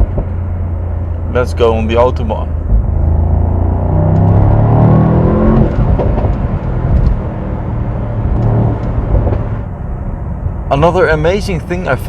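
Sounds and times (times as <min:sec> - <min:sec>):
car engine accelerating hard: 0:00.0 - 0:09.7.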